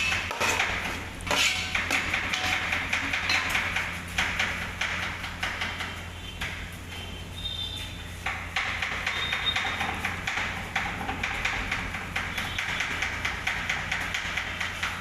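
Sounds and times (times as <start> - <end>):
fast knocking: 8.3 - 15.0.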